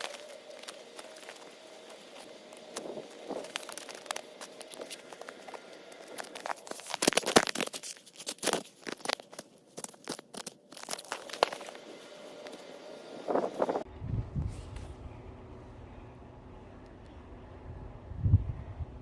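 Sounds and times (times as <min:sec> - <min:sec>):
crinkling crackling rustle: 0:00.0 - 0:12.7.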